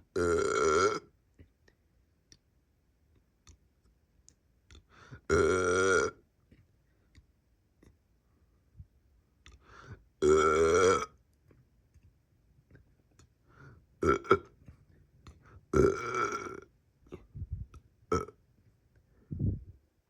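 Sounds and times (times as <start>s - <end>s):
person burping: 0.0s - 1.1s, 5.3s - 6.2s, 10.2s - 11.2s, 14.0s - 14.6s, 15.7s - 17.3s, 18.1s - 18.4s.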